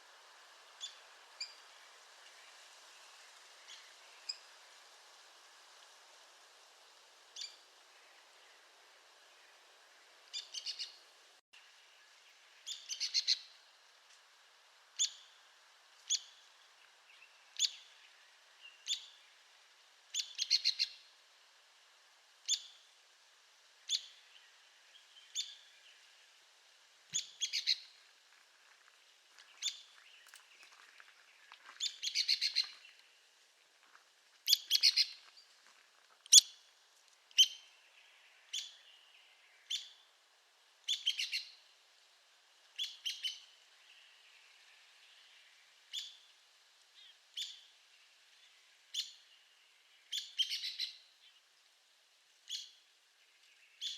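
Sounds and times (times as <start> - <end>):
woodpecker call notes: 31.8 - 32.8, 34.5 - 35.2.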